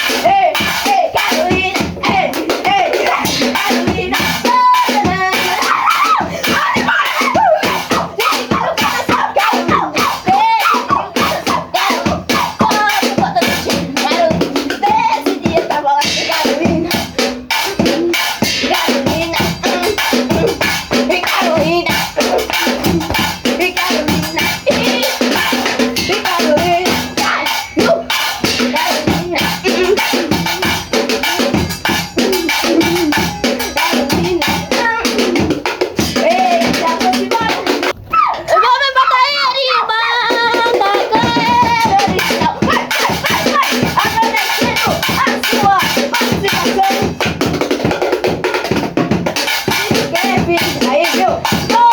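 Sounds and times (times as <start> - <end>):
band playing festival music: 0.0 - 38.7, 40.8 - 51.9
drum kit beat: 0.0 - 51.9.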